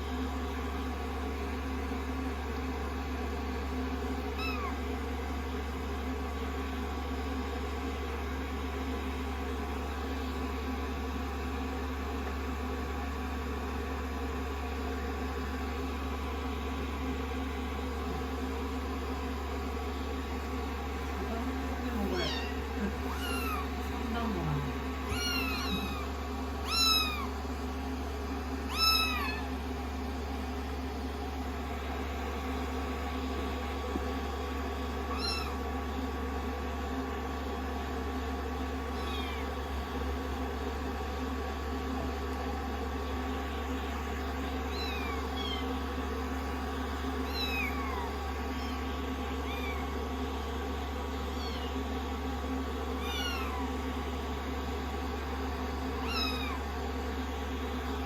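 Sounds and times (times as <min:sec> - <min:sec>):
kittens mewing: 0:04.3 - 0:04.9, 0:21.2 - 0:29.6, 0:35.0 - 0:35.6, 0:38.9 - 0:39.9, 0:44.1 - 0:50.4, 0:52.9 - 0:53.9, 0:55.9 - 0:56.7
hair dryer humming: 0:07.8 - 0:58.0.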